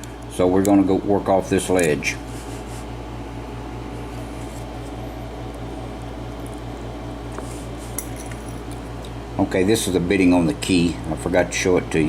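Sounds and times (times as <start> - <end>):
pulsing mechanical hum: 0.0 - 12.0.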